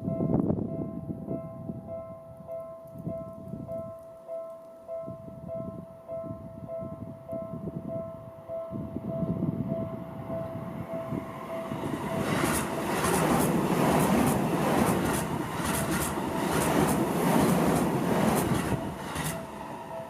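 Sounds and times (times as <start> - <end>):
train wheels clacking: 12.0 - 20.0.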